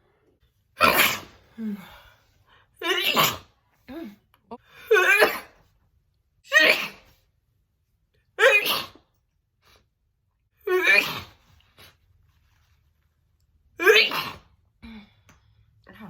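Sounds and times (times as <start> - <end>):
woman sneezing: 2.8 - 3.5, 4.9 - 5.6, 6.5 - 7.1, 8.4 - 9.0, 13.8 - 14.5.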